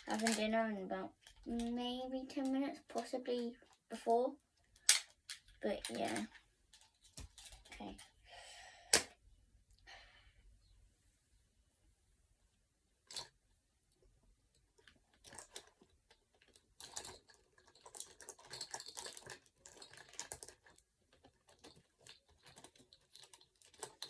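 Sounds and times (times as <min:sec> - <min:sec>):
plastic toys clattering: 0:00.0 - 0:08.2, 0:13.1 - 0:13.4, 0:14.6 - 0:24.0.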